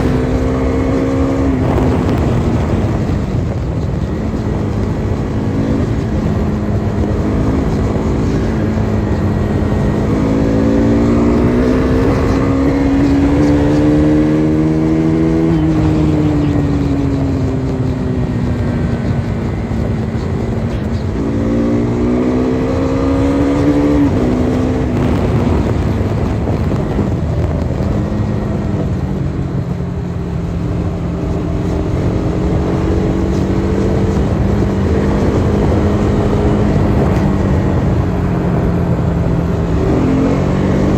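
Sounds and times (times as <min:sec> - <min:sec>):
motorcycle engine accelerating: 0:00.0 - 0:40.9
wind and road noise: 0:00.0 - 0:40.9.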